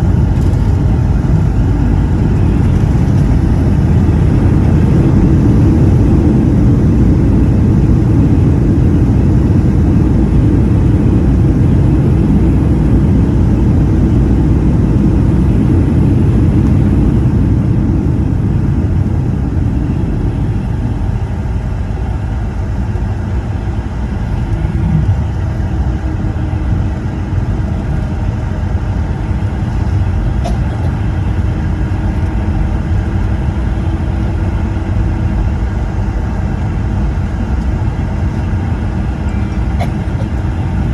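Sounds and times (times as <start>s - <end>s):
jet engine cabin rumble: 0.0s - 40.9s.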